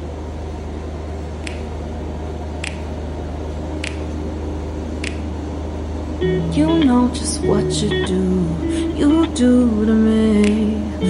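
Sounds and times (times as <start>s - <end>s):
low machine hum: 0.0s - 11.0s
short sharp clicks: 2.6s - 2.9s, 3.8s - 4.0s, 5.0s - 5.2s.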